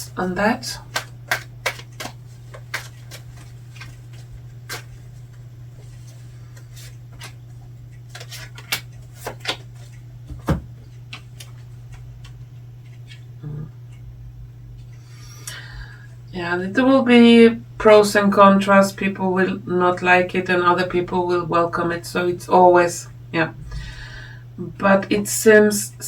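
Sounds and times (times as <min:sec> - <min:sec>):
steady low hum: 0:00.0 - 0:26.0
cards shuffling: 0:00.8 - 0:07.5, 0:08.1 - 0:13.2.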